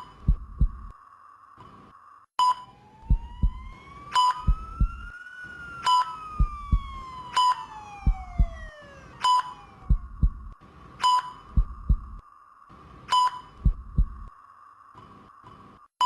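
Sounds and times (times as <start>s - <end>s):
heartbeat thumps: 0.0s - 0.9s, 3.0s - 5.1s, 6.4s - 7.1s, 7.9s - 8.8s, 9.8s - 10.6s, 11.5s - 12.2s, 13.6s - 14.3s
patient monitor beeping: 0.0s - 0.9s, 2.4s - 5.2s, 5.8s - 12.2s, 13.1s - 14.3s
siren wailing: 2.7s - 10.3s.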